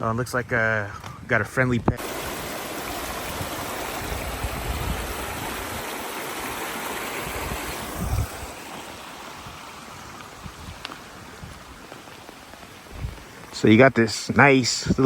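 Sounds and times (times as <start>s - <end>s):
creek water rushing over rocks: 2.0s - 13.7s.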